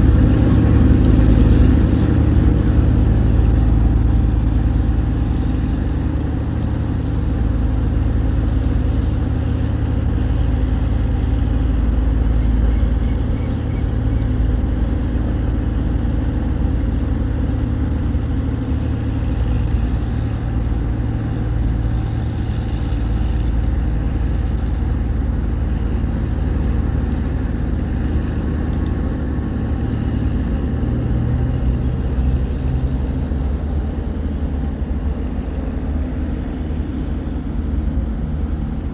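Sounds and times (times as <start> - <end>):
boat engine deep hum: 0.0 - 38.9.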